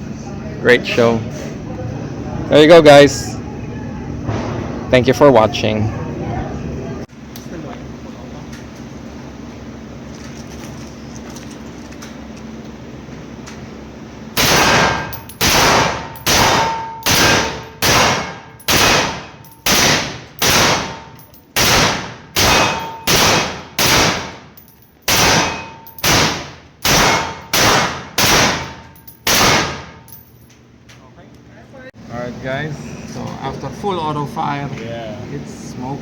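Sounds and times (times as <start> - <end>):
rifle shots echoing: 14.4 - 24.5, 25.1 - 30.1.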